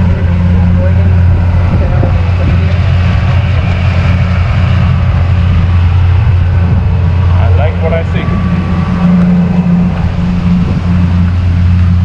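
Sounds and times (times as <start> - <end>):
boat motor humming: 0.0 - 12.0
water noise: 0.0 - 12.0
wind noise: 0.0 - 12.0.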